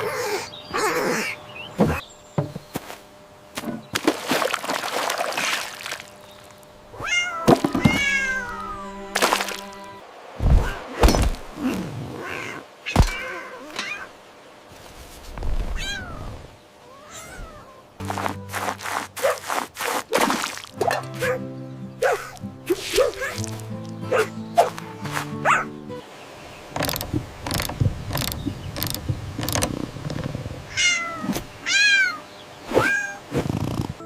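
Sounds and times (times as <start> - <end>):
cat meowing: 7.0 - 9.1, 15.7 - 17.8, 30.7 - 32.2
background music: 18.0 - 19.2, 20.7 - 26.1
sharp thumps: 26.8 - 30.5.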